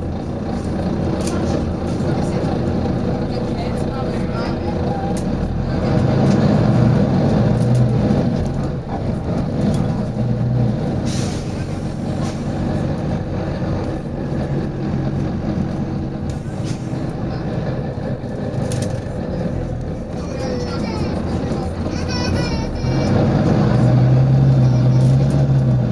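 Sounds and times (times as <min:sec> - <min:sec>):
bus diesel engine droning: 0:00.0 - 0:25.9
air hiss from bus: 0:11.0 - 0:12.6.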